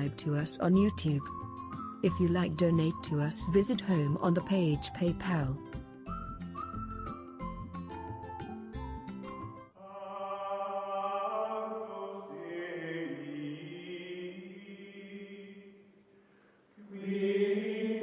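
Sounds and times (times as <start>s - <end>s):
choir-like chanting music: 9.8s - 15.8s, 16.8s - 18.0s.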